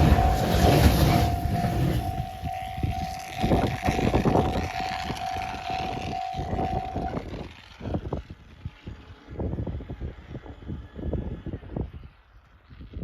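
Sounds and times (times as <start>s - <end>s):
level-crossing alarm ringing: 0.0s - 7.3s
train rumbling past: 0.0s - 7.8s.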